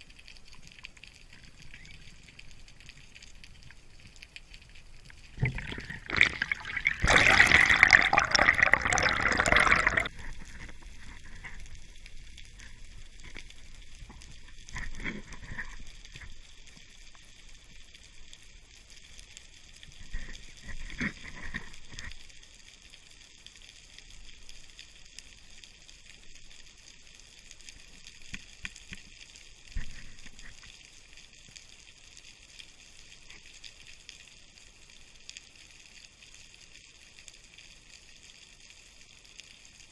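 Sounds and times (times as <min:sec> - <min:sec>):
rushing splashing water: 0:05.4 - 0:10.1.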